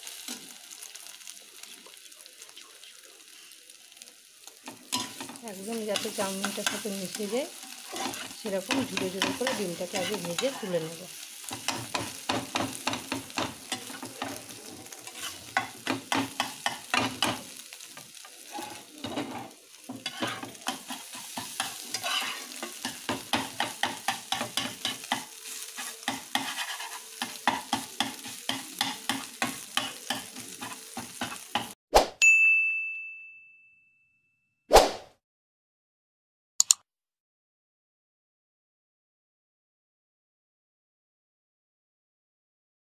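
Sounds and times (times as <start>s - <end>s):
eggs sizzling in hot oil: 0.0s - 31.8s
spatula scraping a pan: 4.6s - 31.8s.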